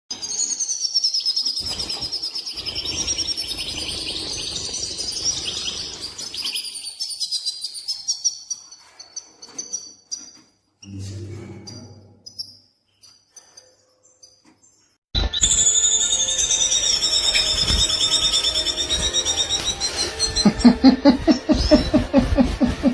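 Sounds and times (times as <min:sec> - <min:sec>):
low rumble: 0:10.8 - 0:12.4
finch twittering: 0:15.2 - 0:22.7.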